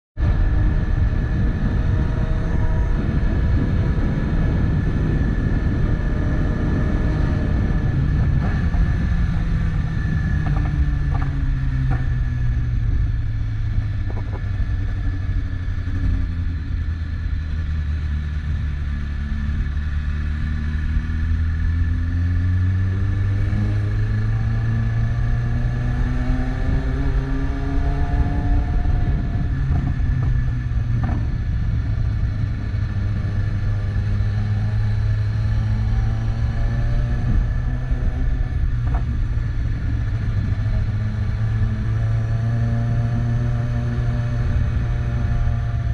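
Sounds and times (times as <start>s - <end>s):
motorcycle engine running: 0.2s - 45.9s.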